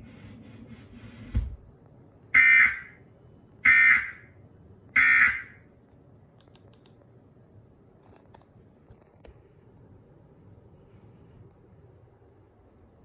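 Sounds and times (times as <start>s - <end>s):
buzzy digital data bursts: 0.0s - 1.4s
low thump: 1.0s - 1.7s.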